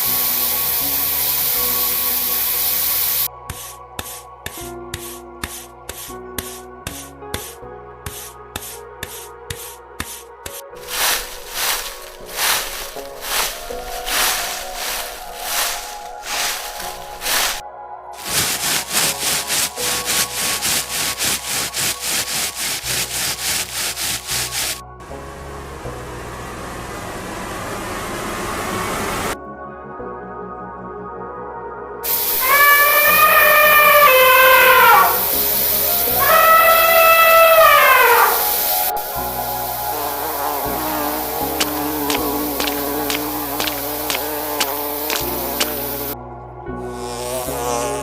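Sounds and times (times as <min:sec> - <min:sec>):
hissing beat over low notes: 0:00.0 - 0:03.3, 0:10.8 - 0:17.6, 0:18.2 - 0:24.9, 0:32.1 - 0:46.2
hissing swell over held notes: 0:00.0 - 0:03.3, 0:10.8 - 0:17.6, 0:32.1 - 0:46.2
rhythmic rasping strokes: 0:00.0 - 0:17.6, 0:18.2 - 0:24.8, 0:32.1 - 0:46.2.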